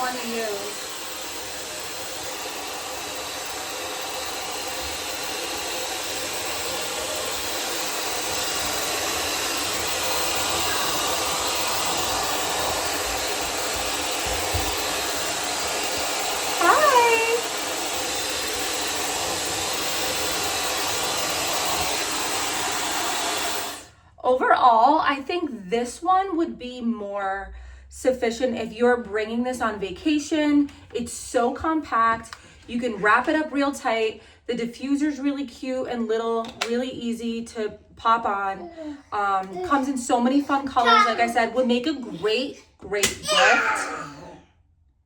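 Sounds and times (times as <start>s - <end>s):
hair dryer running: 0.0s - 23.9s, 39.2s - 42.2s.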